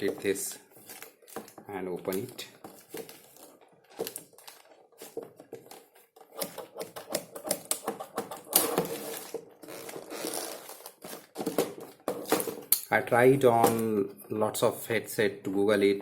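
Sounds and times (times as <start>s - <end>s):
packaging being cut and opened: 8.4s - 11.6s.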